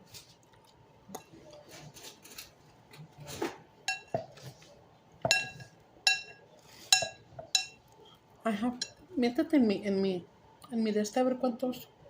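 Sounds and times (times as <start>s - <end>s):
spoon clinking on bowl: 3.9s - 4.3s, 5.2s - 7.8s.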